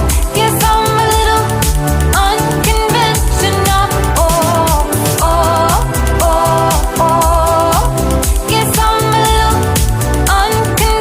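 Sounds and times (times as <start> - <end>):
pop music with steady beat: 0.0 - 11.0.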